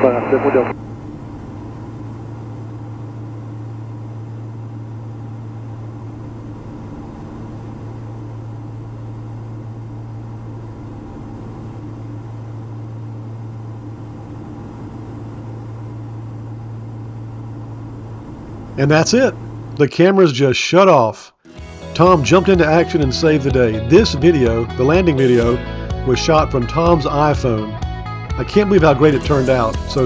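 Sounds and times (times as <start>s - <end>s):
aircraft cabin engine drone: 0.0s - 19.8s.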